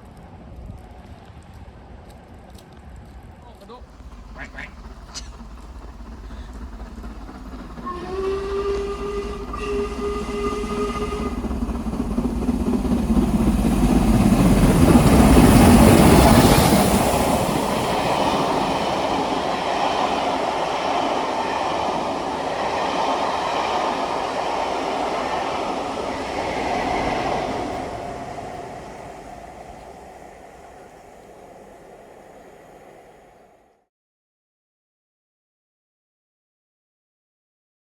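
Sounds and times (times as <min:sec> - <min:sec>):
train passing rumble and rattle: 0:00.0 - 0:33.7
train horn: 0:07.7 - 0:12.3.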